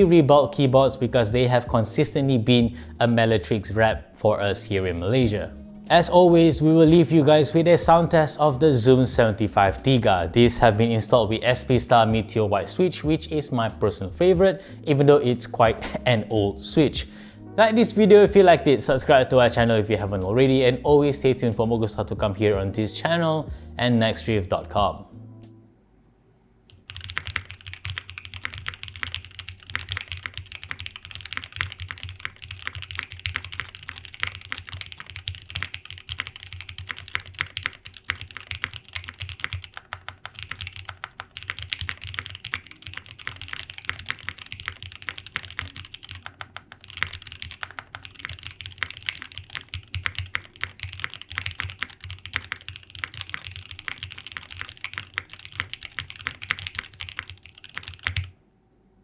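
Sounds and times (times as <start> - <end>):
fast mechanical keyboard typing: 26.7 - 58.3.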